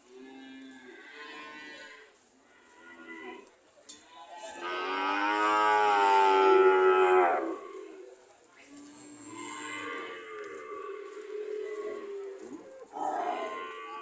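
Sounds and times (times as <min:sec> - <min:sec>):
cows mooing: 0:04.6 - 0:07.8, 0:08.9 - 0:14.0.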